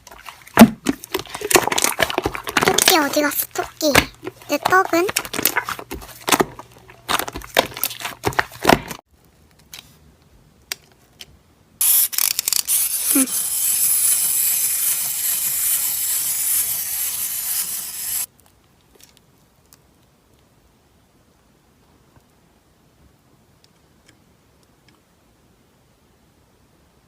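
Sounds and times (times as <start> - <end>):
slime hissing rustle: 11.8 - 18.3.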